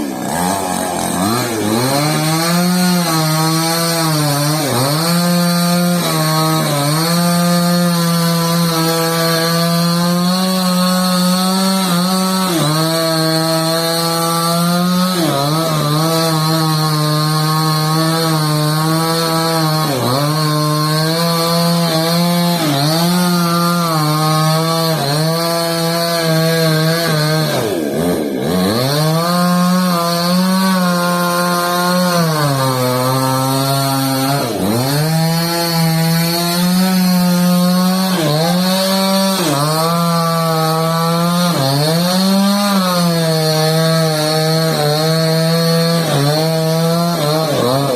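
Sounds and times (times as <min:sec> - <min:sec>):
chainsaw engine at high revs: 0:00.0 - 0:47.9.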